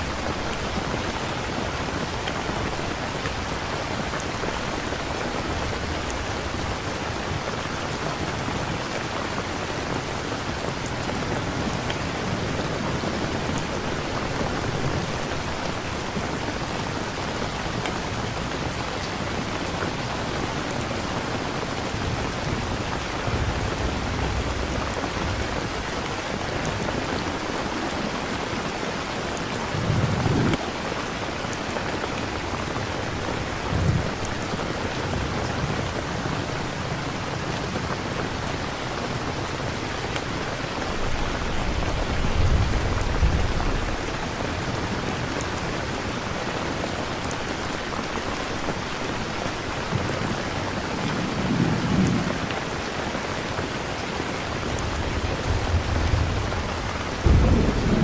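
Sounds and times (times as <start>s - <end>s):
steady rain falling: 0.0s - 58.0s
distant thunder rumble: 54.7s - 58.0s.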